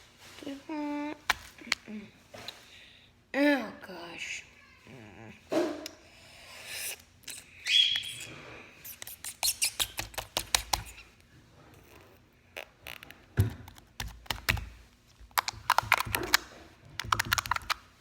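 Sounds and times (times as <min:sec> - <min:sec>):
slime squished clicking and popping: 0:15.3 - 0:17.8.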